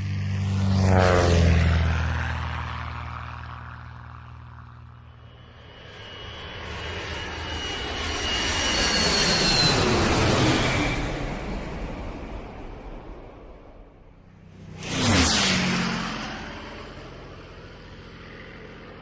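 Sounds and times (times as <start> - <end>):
high engine whine: 0.0 - 19.0
vehicles passing: 12.4 - 19.0.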